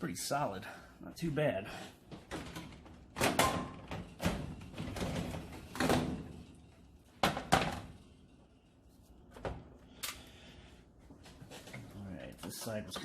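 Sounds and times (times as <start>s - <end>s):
knocks and clunks of metal parts: 2.1s - 9.7s.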